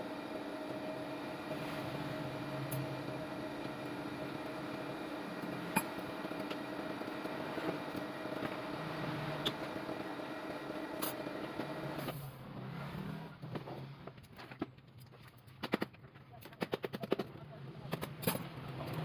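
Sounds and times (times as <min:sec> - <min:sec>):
machine hum with hiss: 0:00.0 - 0:12.4.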